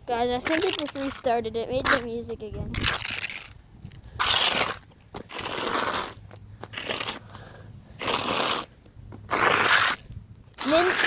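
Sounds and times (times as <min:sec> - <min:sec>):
phone scraping on rough surface: 0:01.8 - 0:07.4, 0:08.0 - 0:11.0.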